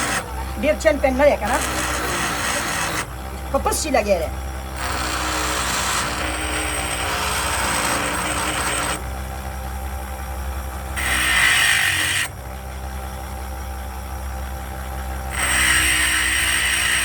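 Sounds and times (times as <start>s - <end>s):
power tool hissing on metal: 0.0s - 9.0s, 11.0s - 12.3s, 15.3s - 17.0s.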